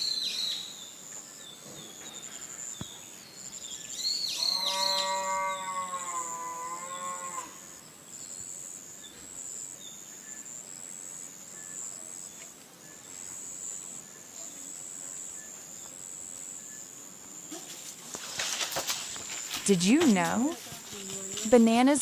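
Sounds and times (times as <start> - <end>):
high insect buzz: 0.0 - 22.0
cow mooing: 4.5 - 7.7.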